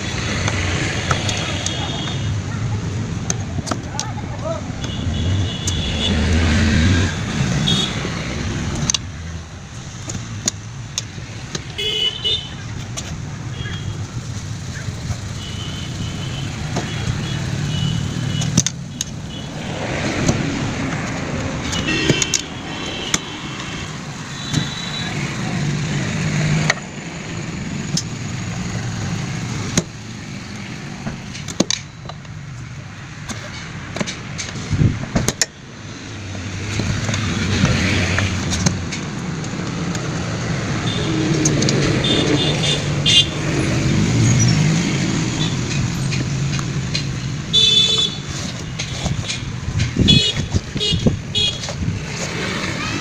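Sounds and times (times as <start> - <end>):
road traffic passing: 0.0 - 53.0
car horns: 4.7 - 8.2, 11.7 - 12.7, 13.5 - 14.1, 15.2 - 19.6, 21.6 - 25.4, 40.7 - 43.7, 47.2 - 51.8
sharp taps and knocks: 10.0 - 11.8, 31.0 - 35.6, 45.6 - 47.4, 48.3 - 52.3.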